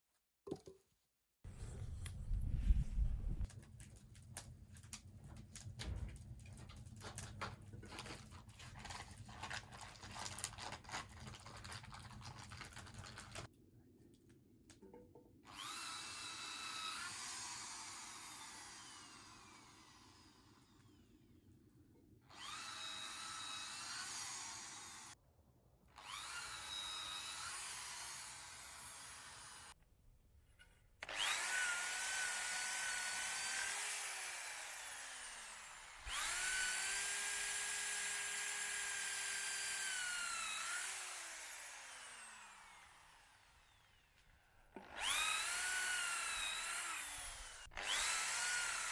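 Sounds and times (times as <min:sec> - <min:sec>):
electric drill boring into wood: 0:15.5 - 0:21.2, 0:22.3 - 0:25.2, 0:26.0 - 0:29.8, 0:31.0 - 0:48.9.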